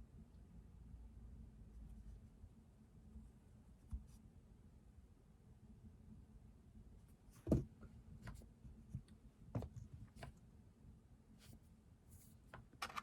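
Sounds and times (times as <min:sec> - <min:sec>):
knock on desk: 0:07.5 - 0:07.7
pen and stationery handled: 0:12.5 - 0:13.0.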